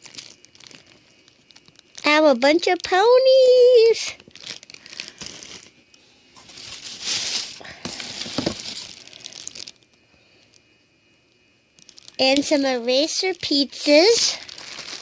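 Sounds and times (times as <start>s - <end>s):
packaging crinkling and rustling: 0.0s - 10.7s, 11.7s - 15.0s.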